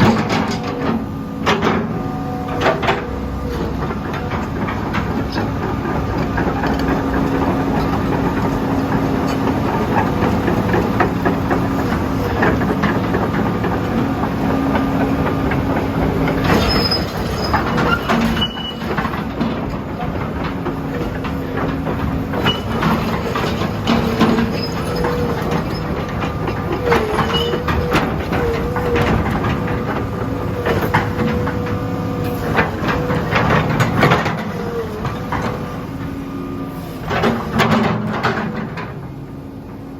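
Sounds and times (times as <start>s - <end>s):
diesel excavator engine: 0.0s - 39.9s
hydraulic whine: 22.2s - 37.6s.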